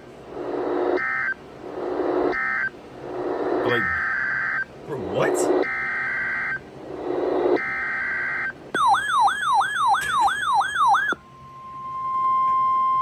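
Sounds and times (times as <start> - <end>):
electronic siren-like wail: 3.3 - 13.0
steady alert tone: 3.6 - 4.2, 4.9 - 5.6
screeching digital data bursts: 3.6 - 6.6.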